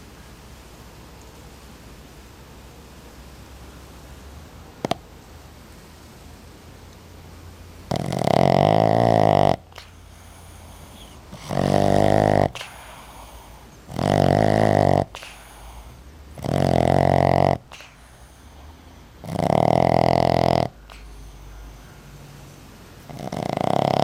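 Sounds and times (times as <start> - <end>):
dog snoring loudly: 4.8 - 5.1, 7.8 - 24.0
dog breathing quietly: 7.8 - 24.0.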